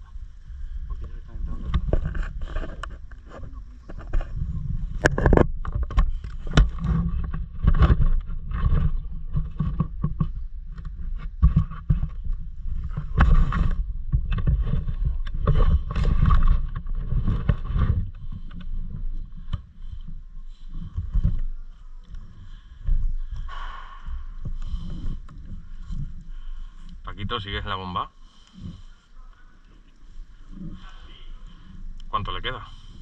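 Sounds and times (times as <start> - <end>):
low rumble: 0.0 - 33.0
irregular knocks and clicks: 1.0 - 27.1.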